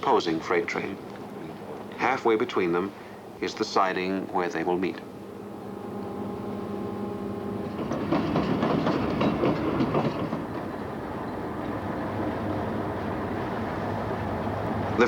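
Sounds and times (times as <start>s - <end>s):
train engine hum: 0.0s - 15.0s
wheels clattering over rail joints: 7.5s - 15.0s.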